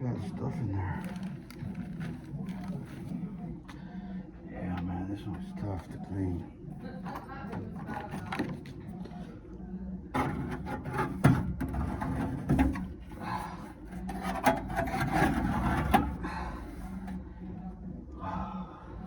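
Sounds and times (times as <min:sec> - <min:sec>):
scraping and rubbing dirt: 0:10.2 - 0:17.2.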